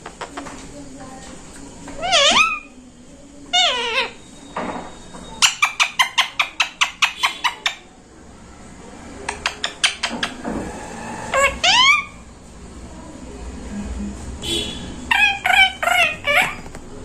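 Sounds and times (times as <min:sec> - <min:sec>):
parrot squawk: 0:02.0 - 0:02.8, 0:03.5 - 0:04.2, 0:05.4 - 0:07.9, 0:09.4 - 0:12.2, 0:15.0 - 0:16.7
parrot clicking chirps: 0:09.2 - 0:10.4.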